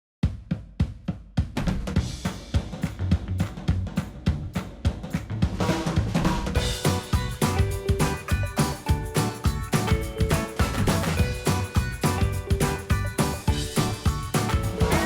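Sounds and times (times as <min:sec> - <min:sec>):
drum kit beat: 0:00.2 - 0:15.0
other instruments playing: 0:06.6 - 0:15.0.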